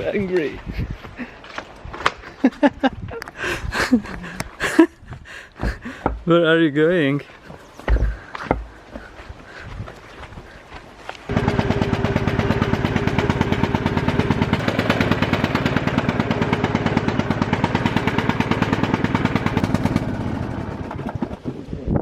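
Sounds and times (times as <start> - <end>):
lawn mower engine running: 11.3 - 21.5.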